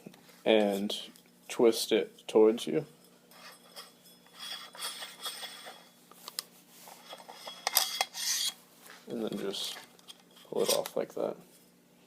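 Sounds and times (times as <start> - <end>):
suppressor scraping on barrel: 3.3 - 5.9, 6.9 - 8.6.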